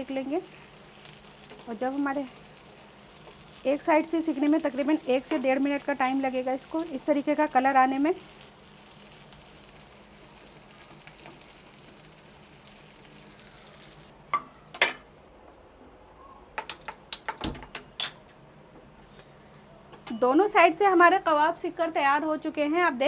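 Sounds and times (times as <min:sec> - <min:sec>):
food sizzling in oil: 0:00.0 - 0:14.1.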